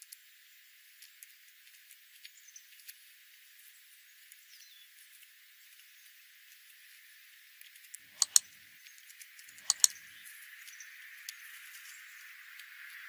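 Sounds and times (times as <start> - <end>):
small birds chirping: 2.1 - 7.0, 7.7 - 13.0
light clicks: 7.9 - 8.5, 9.1 - 10.0.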